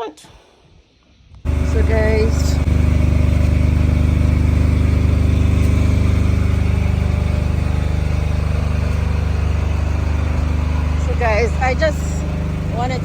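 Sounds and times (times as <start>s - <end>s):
generator engine running: 1.5s - 13.0s.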